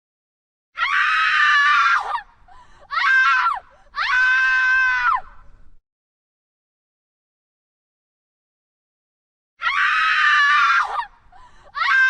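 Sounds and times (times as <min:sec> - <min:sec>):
woman screaming in fear: 0:02.8 - 0:05.3, 0:09.6 - 0:12.0.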